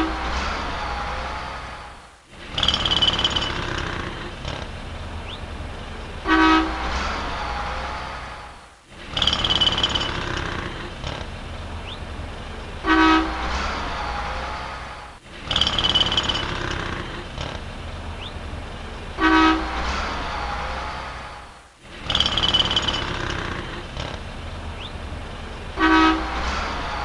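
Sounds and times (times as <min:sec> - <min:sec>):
passing vehicles hum: 0:00.0 - 0:27.0
car horn honk: 0:06.2 - 0:07.0, 0:12.8 - 0:13.5, 0:19.2 - 0:19.9, 0:25.8 - 0:26.5.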